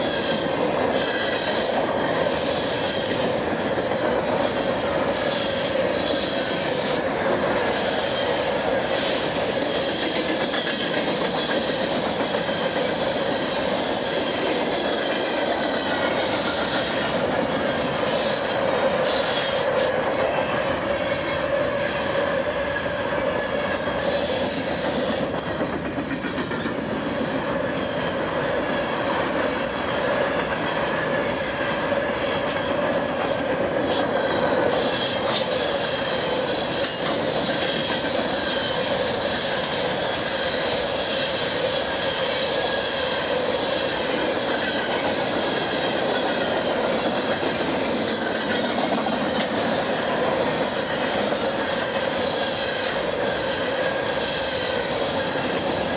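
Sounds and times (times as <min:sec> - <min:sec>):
train wheels rolling on rail: 0:00.0 - 0:55.9.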